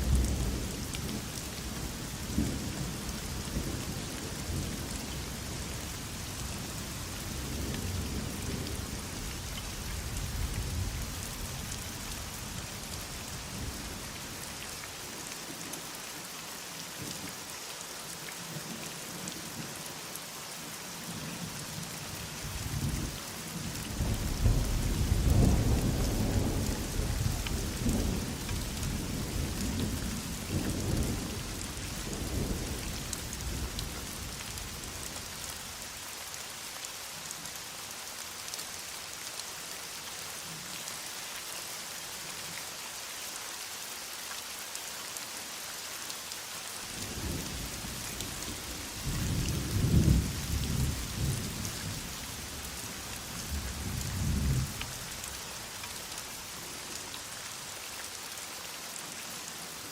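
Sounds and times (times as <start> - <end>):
heavy rain falling: 0.0 - 59.9.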